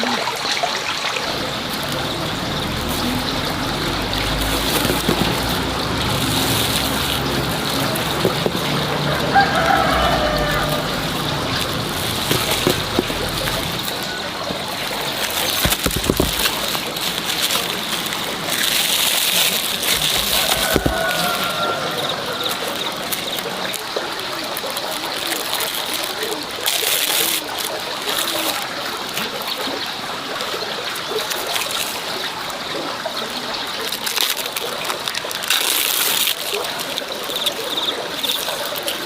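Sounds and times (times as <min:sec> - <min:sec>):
water running and splashing: 0:00.0 - 0:39.0
rooster crowing: 0:08.9 - 0:12.4, 0:20.1 - 0:23.4.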